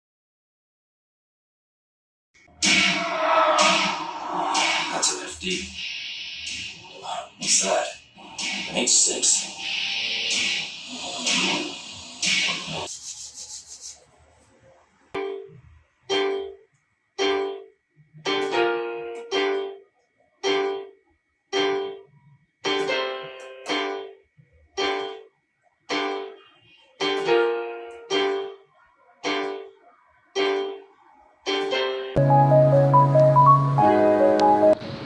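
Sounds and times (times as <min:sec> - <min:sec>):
slow piano melody: 0:17.2 - 0:17.7, 0:18.3 - 0:19.8, 0:20.4 - 0:21.0, 0:21.6 - 0:24.2, 0:24.8 - 0:25.2, 0:25.9 - 0:26.4, 0:27.0 - 0:28.6, 0:29.2 - 0:29.8, 0:30.4 - 0:30.8, 0:31.5 - 0:35.0.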